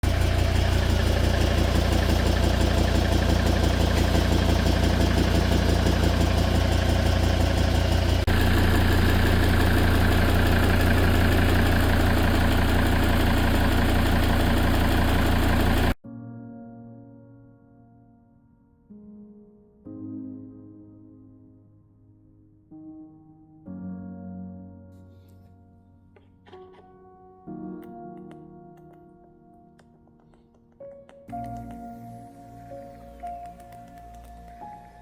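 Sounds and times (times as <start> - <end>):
diesel engine idling: 0.0 - 16.0
soft music: 16.0 - 35.0.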